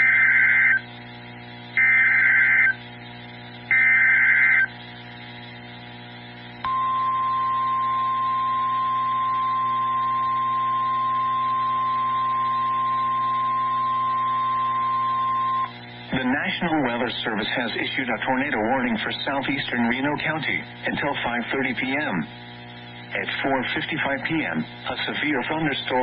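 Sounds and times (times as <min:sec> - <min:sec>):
steady warning alarm tone: 0:00.0 - 0:00.8, 0:01.8 - 0:02.8, 0:03.7 - 0:04.7, 0:06.6 - 0:15.8.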